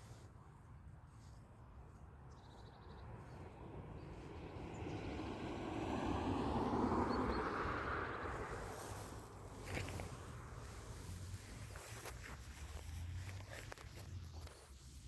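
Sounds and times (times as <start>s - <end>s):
passing engine rushing: 3.2s - 11.9s.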